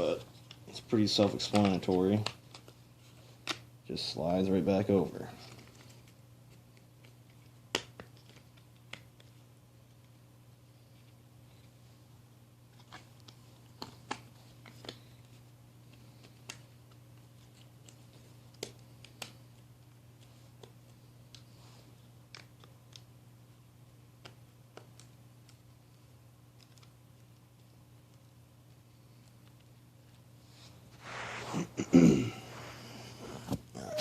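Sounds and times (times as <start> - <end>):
steady low hum: 8.4 - 34.0.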